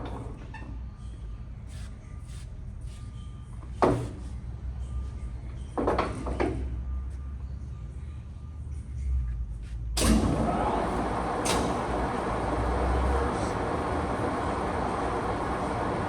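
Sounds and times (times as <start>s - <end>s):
lathe humming with faint whine: 10.2s - 16.0s.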